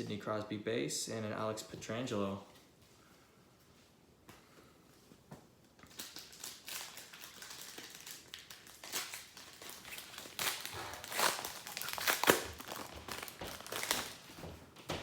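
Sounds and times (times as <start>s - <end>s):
foil wrapper crinkling: 5.8s - 14.4s.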